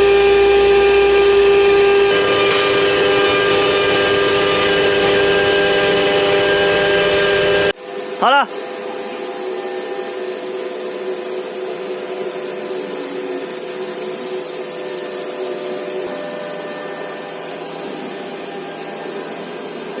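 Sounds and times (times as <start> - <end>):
router cutting wood: 0.0 - 7.8
thin high whine: 0.0 - 20.0.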